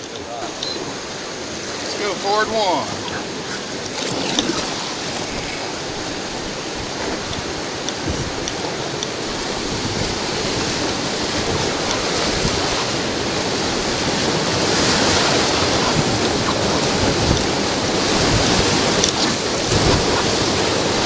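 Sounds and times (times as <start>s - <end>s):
rapids roaring: 0.0s - 21.0s.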